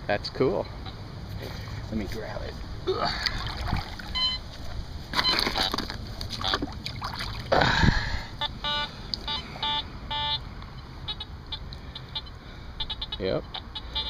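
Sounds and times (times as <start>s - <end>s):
creek water splashing: 2.6s - 7.8s
metal detector beeps: 4.1s - 4.5s, 5.2s - 5.8s, 8.4s - 14.0s.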